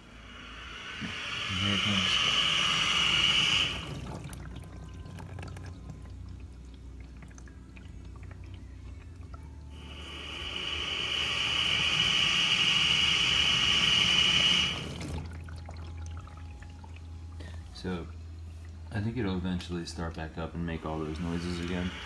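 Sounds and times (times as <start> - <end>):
water rushing: 0.0 - 6.0
dishwasher humming: 0.0 - 22.0.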